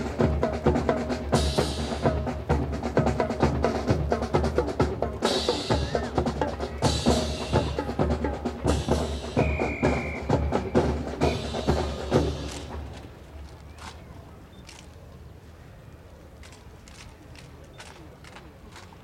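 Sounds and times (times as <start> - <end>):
snare and bass drums cadence: 0.0 - 14.0.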